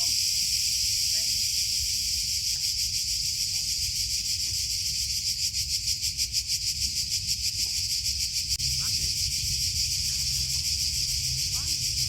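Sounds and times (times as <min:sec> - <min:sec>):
cicadas buzzing: 0:00.0 - 0:12.0
low rumble: 0:08.6 - 0:12.0.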